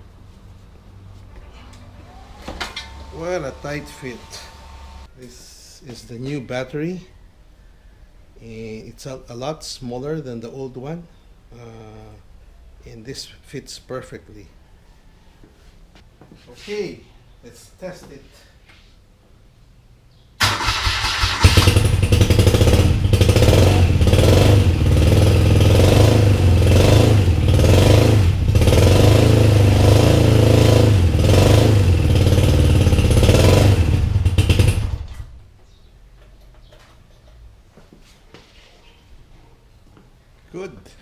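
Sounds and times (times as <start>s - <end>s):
electric starter motor cranking: 1.9s - 5.1s.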